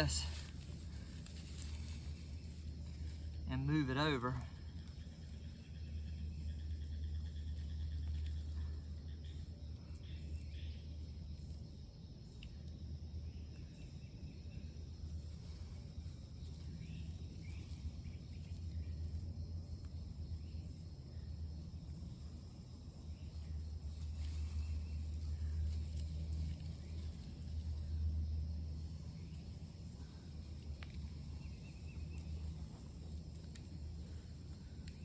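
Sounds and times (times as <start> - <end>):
steady low rumble: 0.0 - 35.0.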